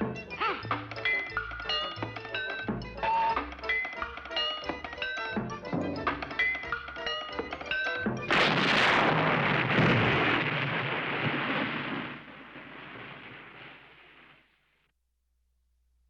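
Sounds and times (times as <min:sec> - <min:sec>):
plucked music notes: 0:00.0 - 0:08.7
cartoon explosion blast: 0:08.3 - 0:14.5.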